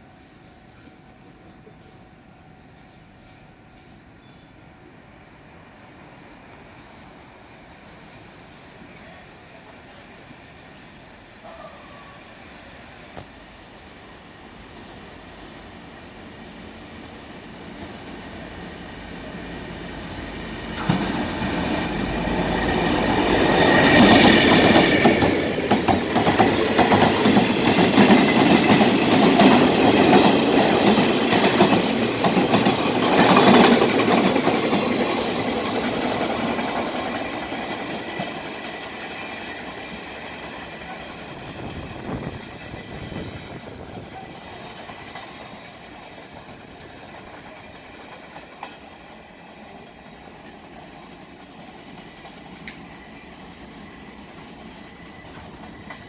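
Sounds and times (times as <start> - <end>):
freight train passing: 0.0 - 56.0
train wheels knocking: 20.7 - 49.0.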